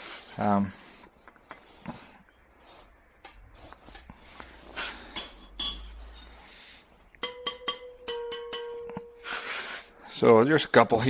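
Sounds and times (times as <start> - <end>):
wrench tapping ringing spokes: 7.2 - 9.3.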